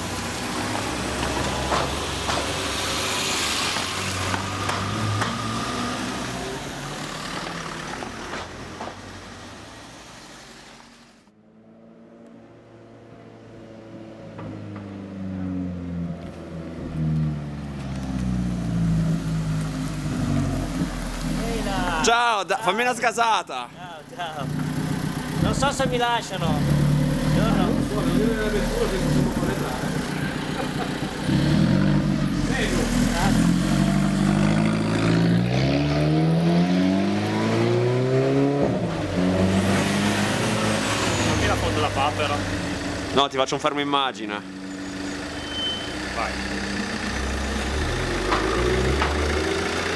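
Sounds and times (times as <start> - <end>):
car engine at low revs: 14.0 - 22.1, 23.8 - 49.9.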